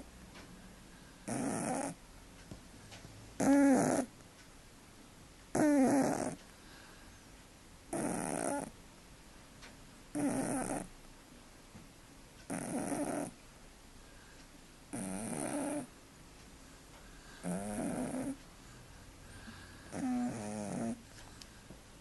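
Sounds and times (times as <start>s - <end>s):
cat snoring: 1.2s - 2.0s, 3.4s - 4.1s, 5.5s - 6.4s, 7.9s - 8.7s, 10.1s - 10.9s, 12.5s - 13.4s, 14.9s - 15.9s, 17.4s - 18.4s, 19.4s - 21.0s.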